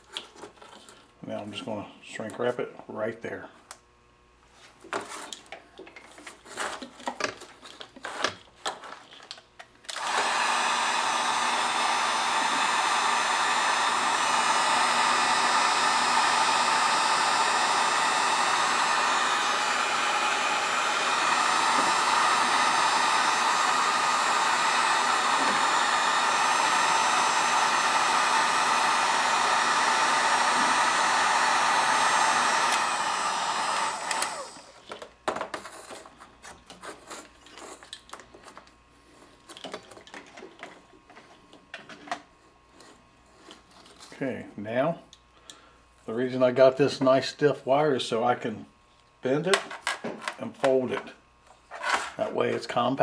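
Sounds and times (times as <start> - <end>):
hot-air blower running: 9.8 - 44.4.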